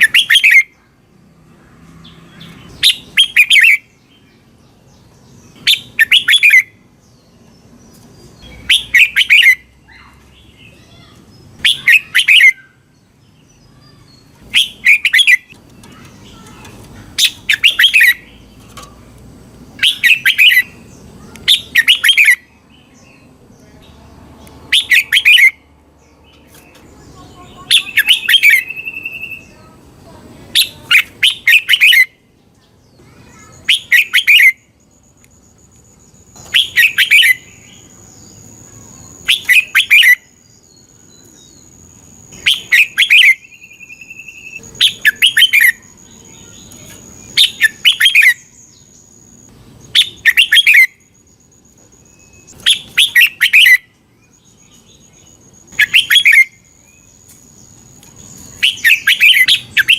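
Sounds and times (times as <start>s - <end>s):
bird singing: 0.0s - 59.9s
faint steady high tone: 27.0s - 59.9s.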